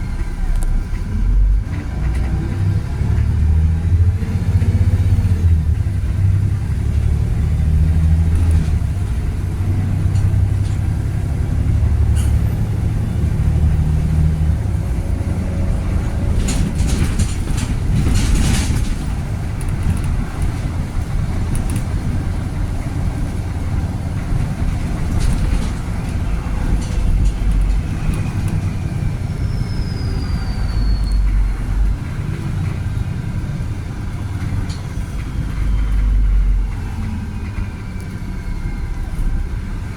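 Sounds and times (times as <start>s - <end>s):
bus diesel engine rumbling: 0.0s - 39.9s
rattling clatter: 5.4s - 29.8s.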